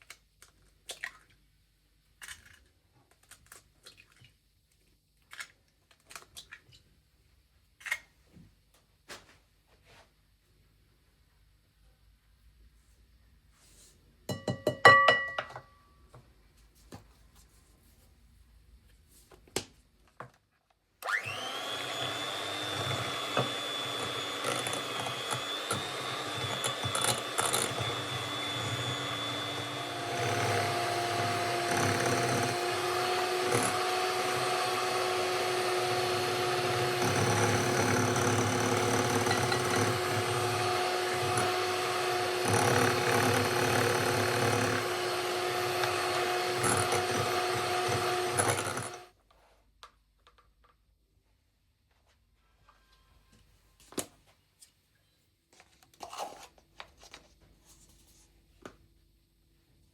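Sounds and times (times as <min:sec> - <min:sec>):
small electric motor running: 0:21.1 - 0:49.1.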